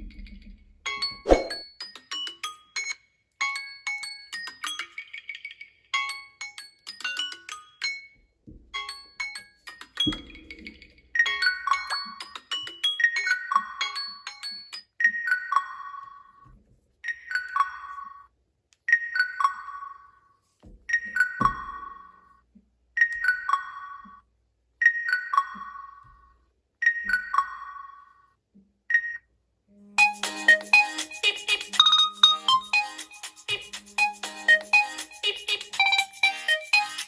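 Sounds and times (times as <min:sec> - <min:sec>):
phone ringtone chime: 0:11.2 - 0:16.4.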